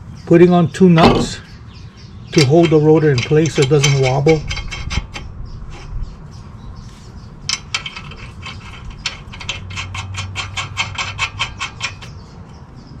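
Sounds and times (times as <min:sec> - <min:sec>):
hand ratchet clicking: 0:07.5 - 0:12.1.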